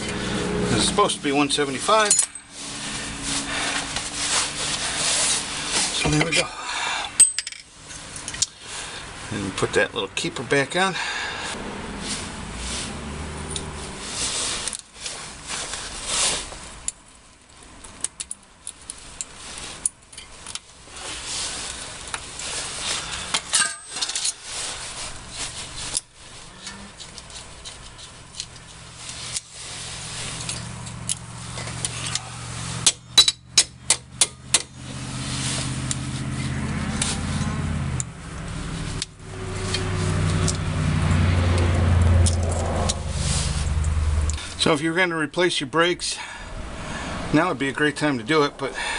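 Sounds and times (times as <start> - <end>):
metal tools clinking: 1.8 - 2.6, 7.2 - 8.6, 23.3 - 24.5, 30.4 - 32.3
low engine-like drone: 30.4 - 44.6.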